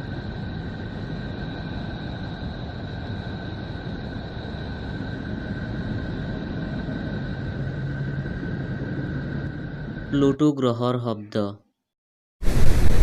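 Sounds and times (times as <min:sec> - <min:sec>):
deep rumbling drone: 0:00.0 - 0:10.4
low hum: 0:00.0 - 0:10.5, 0:12.4 - 0:13.0.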